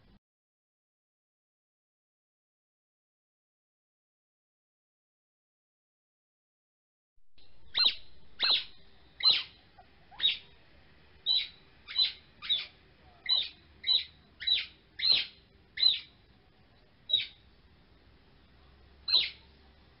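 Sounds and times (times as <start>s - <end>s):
bird chirping downward: 7.4s - 10.6s, 11.2s - 16.2s, 17.1s - 17.4s, 19.0s - 19.5s.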